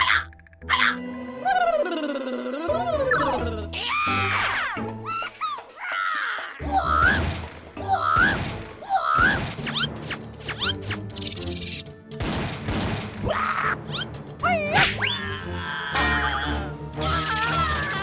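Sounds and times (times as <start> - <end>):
upbeat background music: 0.0 - 18.0.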